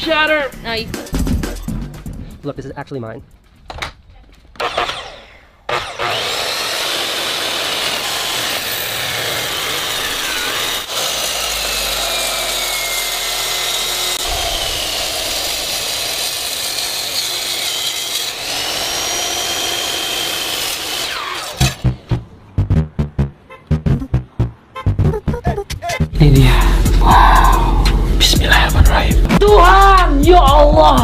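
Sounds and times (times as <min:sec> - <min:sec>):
power tool grinding with whine: 0:04.6 - 0:21.8
deep rumble: 0:26.1 - 0:29.5.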